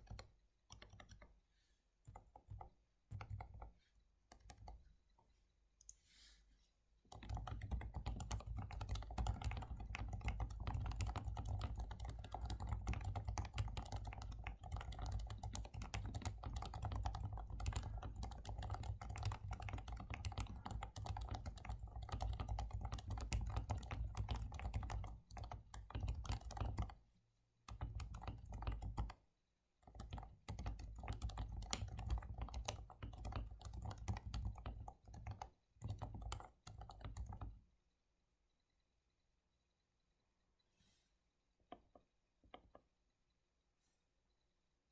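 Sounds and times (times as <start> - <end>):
fast keyboard typing: 0.0 - 1.4, 2.1 - 3.7, 4.3 - 4.8, 7.1 - 27.0, 27.6 - 29.2, 29.8 - 37.6.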